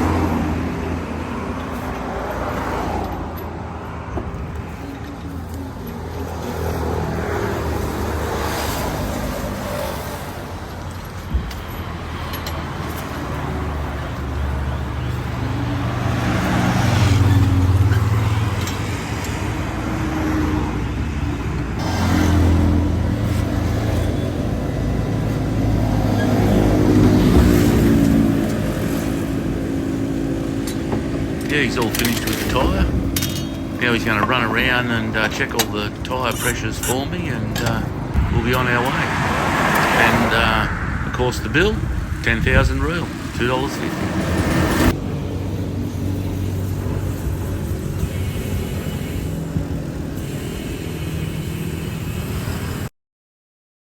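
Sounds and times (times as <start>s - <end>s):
traffic engine hum: 0.0s - 52.9s
vehicles passing: 0.0s - 52.9s.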